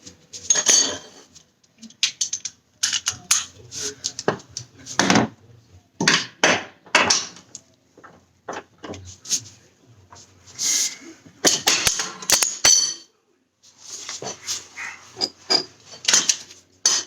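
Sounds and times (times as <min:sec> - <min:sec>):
tools knocking and clattering: 0:02.0 - 0:05.3, 0:06.0 - 0:09.0, 0:11.4 - 0:13.1, 0:15.1 - 0:17.0.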